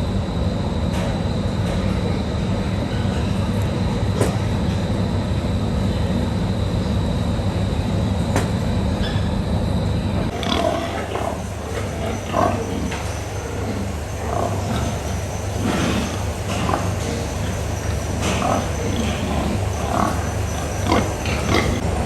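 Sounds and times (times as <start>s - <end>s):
mechanical hum: 0.0s - 22.0s
pigs grunting: 10.3s - 22.0s.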